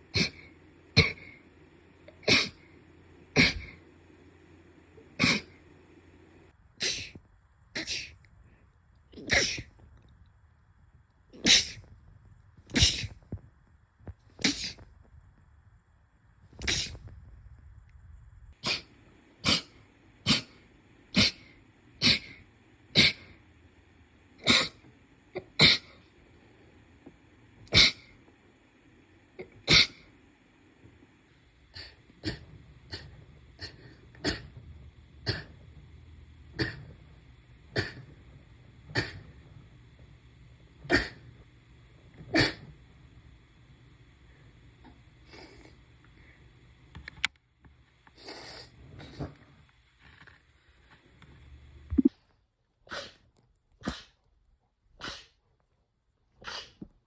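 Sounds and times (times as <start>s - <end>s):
person sneezing: 0.1s - 1.4s, 2.2s - 2.7s, 3.3s - 3.8s, 5.2s - 5.6s, 6.8s - 7.2s, 7.8s - 8.2s, 9.2s - 9.7s, 11.4s - 11.8s, 12.7s - 13.2s, 14.4s - 14.8s, 16.6s - 17.0s, 18.6s - 20.6s, 21.2s - 23.3s, 24.4s - 26.0s, 27.7s - 28.1s, 29.4s - 30.1s, 35.2s - 35.5s, 37.7s - 38.1s, 38.9s - 39.3s, 40.8s - 41.2s, 42.3s - 42.7s, 52.9s - 53.2s, 53.8s - 54.2s, 55.0s - 55.4s, 56.4s - 56.9s.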